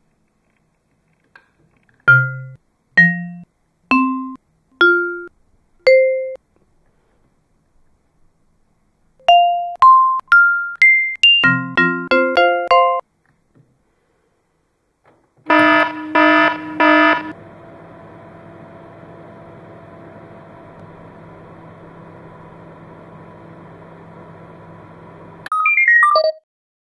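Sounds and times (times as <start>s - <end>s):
microwave keypad beeping: 15.5s - 17.3s
microwave oven humming: 15.5s - 25.5s.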